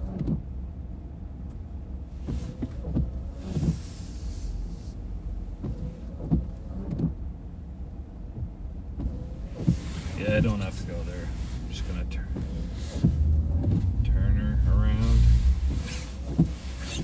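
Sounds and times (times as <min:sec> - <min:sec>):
car idling: 0:07.4 - 0:17.0
soft low thumps: 0:12.2 - 0:16.7.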